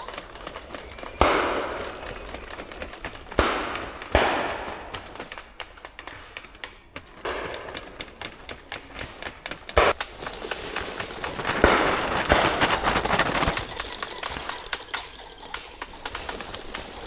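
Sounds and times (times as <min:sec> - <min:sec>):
shotgun shots echoing: 0:03.3 - 0:05.2.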